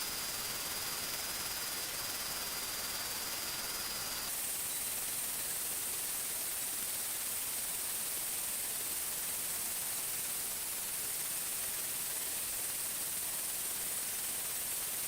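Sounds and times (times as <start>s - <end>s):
faint high whine: 0.0s - 15.0s
steady hiss: 0.0s - 15.0s.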